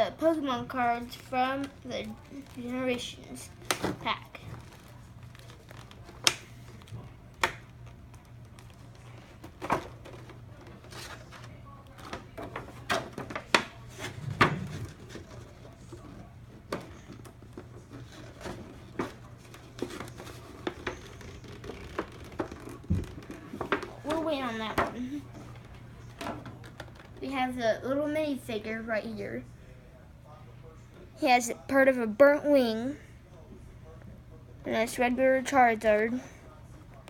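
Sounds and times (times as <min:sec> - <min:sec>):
faint low hum: 0:00.0 - 0:37.0
plastic and cardboard crinkles and clicks: 0:01.6 - 0:02.7, 0:03.5 - 0:27.2.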